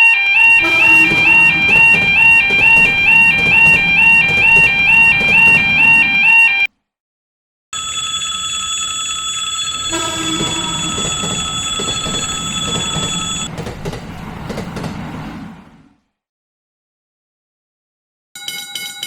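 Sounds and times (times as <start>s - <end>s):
train wheels rumbling on rails: 0.4s - 6.5s, 9.8s - 16.0s
high squeal: 9.7s - 13.5s.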